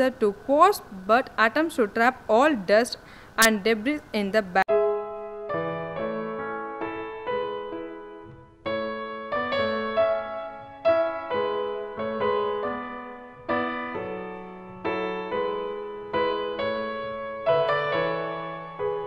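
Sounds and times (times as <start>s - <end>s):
piano chords: 4.6s - 19.0s.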